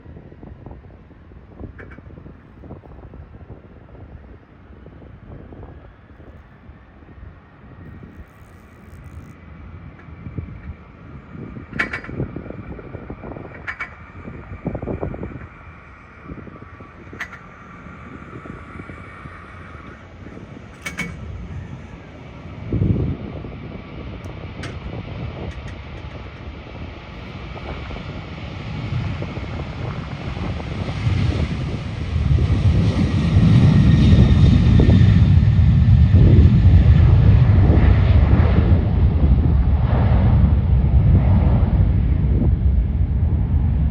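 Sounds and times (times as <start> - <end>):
jet engines running: 0.0 - 43.9.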